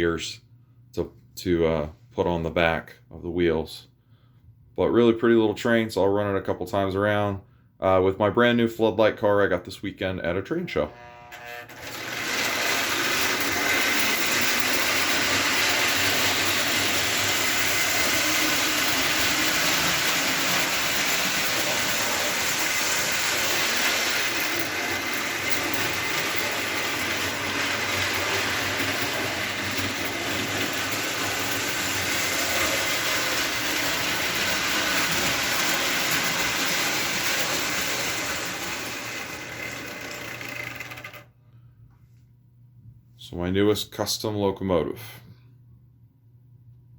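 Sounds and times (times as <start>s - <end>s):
toy train motor whirring: 10.9s - 41.3s
wheels rattling on rail: 12.2s - 40.6s.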